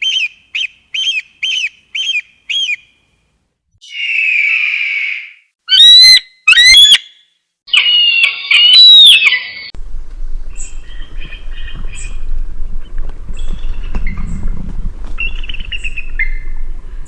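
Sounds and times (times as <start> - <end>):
softer chirping calls: 0.0 - 3.0
background noise: 0.0 - 17.0
eagle screams: 3.8 - 9.7.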